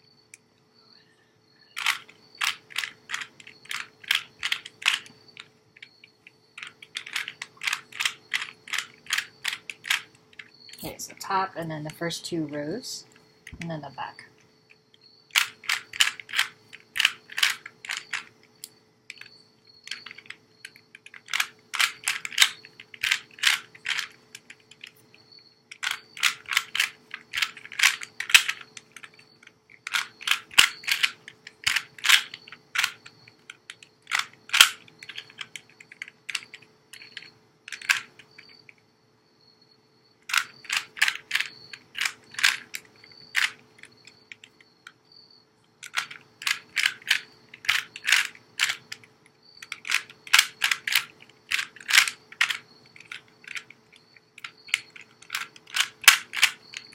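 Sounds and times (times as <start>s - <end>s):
puzzle cube plastic clicks: 1.8s - 11.3s, 15.3s - 38.8s, 40.2s - 45.0s, 45.8s - 56.9s.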